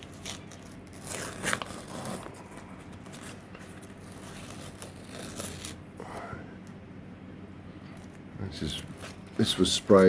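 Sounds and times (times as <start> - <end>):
thin plastic crinkling and rustling: 0.0 - 5.8.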